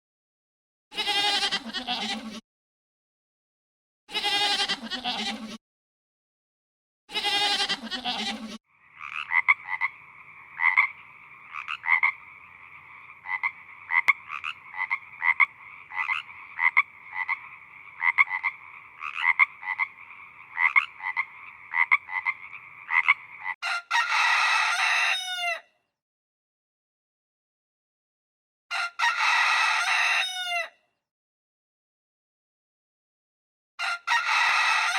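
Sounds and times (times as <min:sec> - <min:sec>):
short bleat: 0:01.0 - 0:02.4, 0:04.1 - 0:05.6, 0:07.1 - 0:08.6
frogs croaking: 0:08.7 - 0:23.6
rooster crowing: 0:23.6 - 0:25.7, 0:28.7 - 0:30.8, 0:33.8 - 0:34.9.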